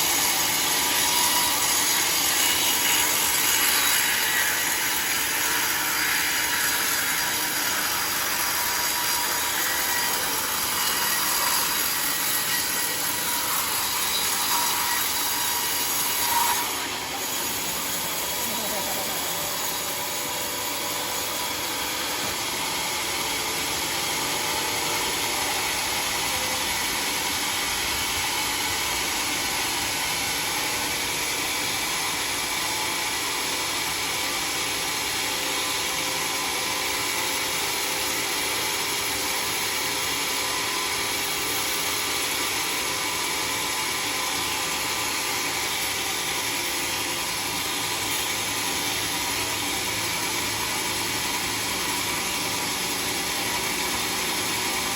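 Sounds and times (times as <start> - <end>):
saw machinery whining: 0.0 - 39.2.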